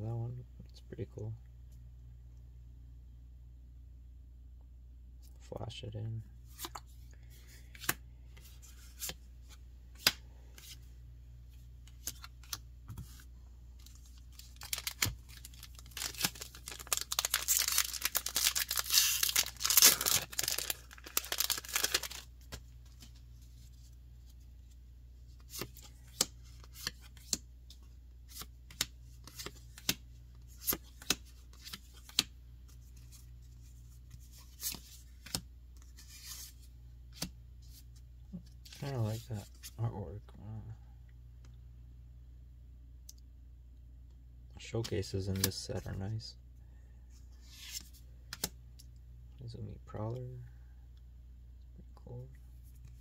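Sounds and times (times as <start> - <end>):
foil wrapper tearing and crinkling: 14.5 - 22.2.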